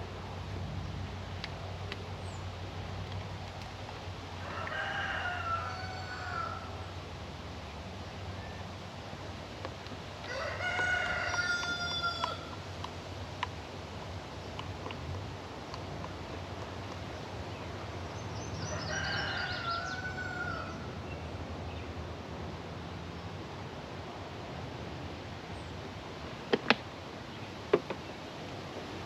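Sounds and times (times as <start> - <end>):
rooster crowing: 4.4 - 6.8, 10.2 - 12.6, 18.6 - 20.9.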